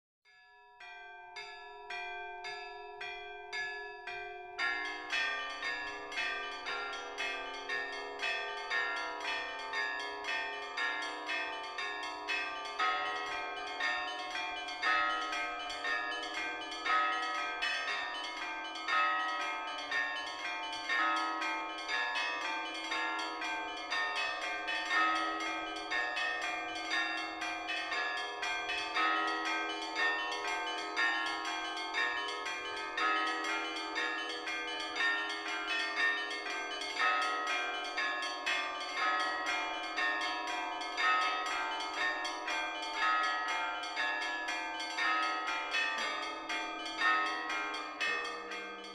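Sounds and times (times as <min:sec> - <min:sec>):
small high bells: 0:00.4 - 0:48.9
deep church bells: 0:00.8 - 0:48.9.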